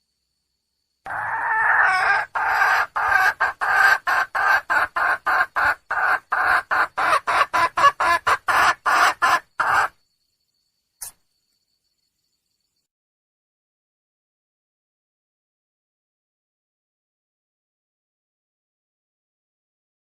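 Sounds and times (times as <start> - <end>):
hen calling and clucking: 1.1 - 10.0.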